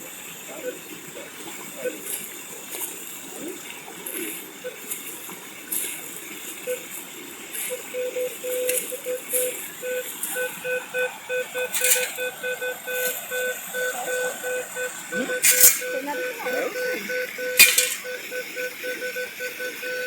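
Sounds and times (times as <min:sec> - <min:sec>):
scraping and rustling ground: 0:00.6 - 0:10.5, 0:11.5 - 0:12.3, 0:15.1 - 0:16.8, 0:17.6 - 0:18.2
metal detector beeping: 0:07.6 - 0:20.0.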